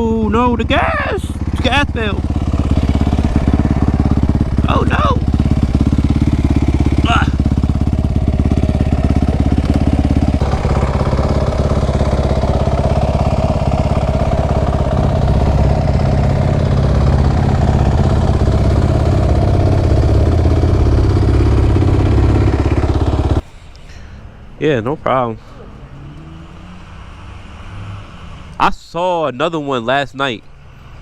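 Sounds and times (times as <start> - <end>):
motorcycle engine running at low revs: 0.0 - 23.4.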